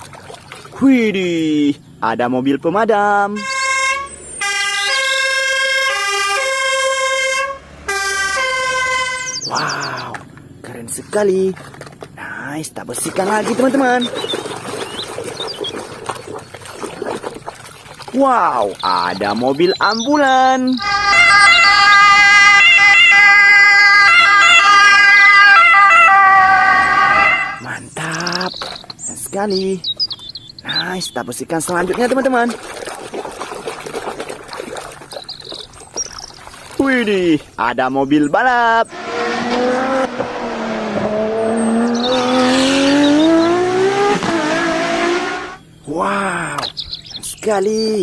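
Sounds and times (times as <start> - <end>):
electronic ambulance siren: 3.4 - 10.1, 19.8 - 27.7
racing car engine revving: 38.8 - 45.6.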